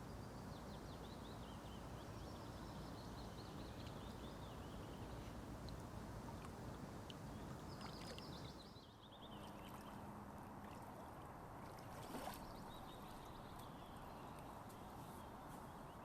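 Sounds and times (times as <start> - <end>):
soft lake water: 0.0 - 16.0.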